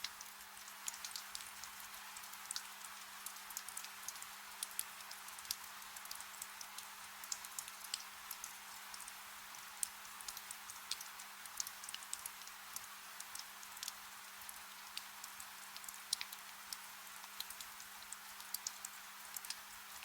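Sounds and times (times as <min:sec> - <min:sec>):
sharp drip ticks: 0:00.0 - 0:20.0
soft rain hiss: 0:00.0 - 0:20.0.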